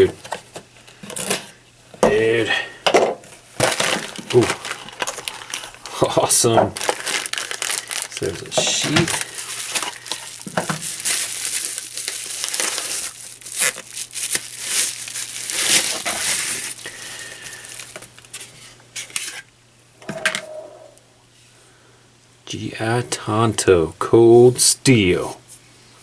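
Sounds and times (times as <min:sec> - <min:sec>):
plastic packaging crinkling: 0:00.0 - 0:01.5, 0:03.2 - 0:19.4.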